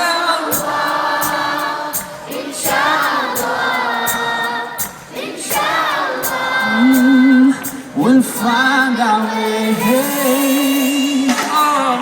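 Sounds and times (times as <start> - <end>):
audience singing together: 0.0 - 12.0
backing music with steady beat: 0.5 - 12.0.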